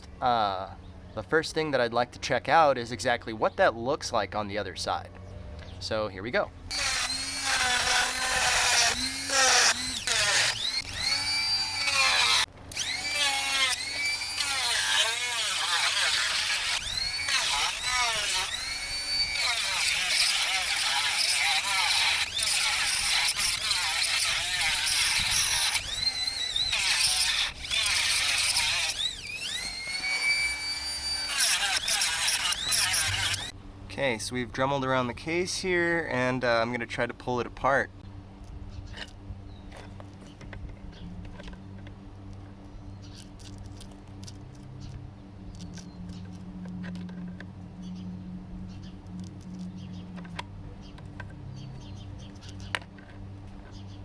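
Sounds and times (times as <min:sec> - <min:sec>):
rotary tool cutting metal: 0:06.7 - 0:33.5.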